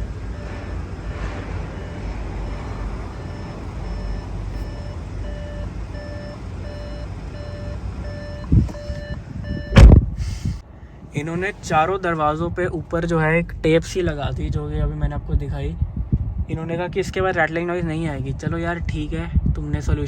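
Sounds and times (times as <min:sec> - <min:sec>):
low rumble: 0:00.0 - 0:20.0
short electronic beeps: 0:00.3 - 0:09.9
thump: 0:09.7 - 0:10.1.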